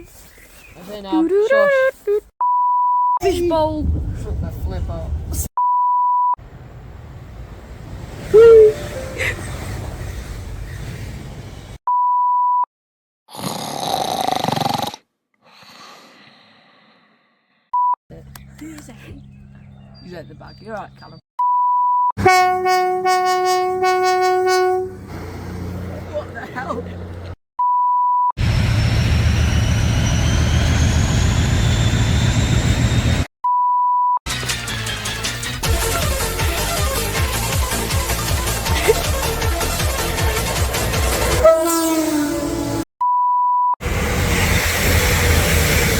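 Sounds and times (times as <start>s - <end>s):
censor bleep: 2.4s - 3.2s, 11.9s - 12.7s, 21.4s - 22.1s, 27.6s - 28.3s, 43.0s - 43.8s
music: 9.0s - 9.2s, 34.3s - 41.4s
faint rising whines: 28.4s - 33.3s
loud burst of noise: 28.4s - 33.3s, 43.8s - 45.9s
loud dense rumbling noise: 28.4s - 33.3s, 43.8s - 45.9s.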